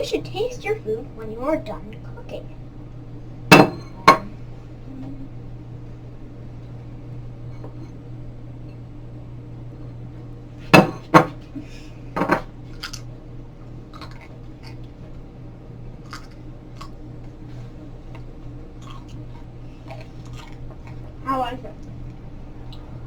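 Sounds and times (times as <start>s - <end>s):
steady low hum: 0.0s - 23.0s
dishes and utensils clinking: 3.5s - 4.4s.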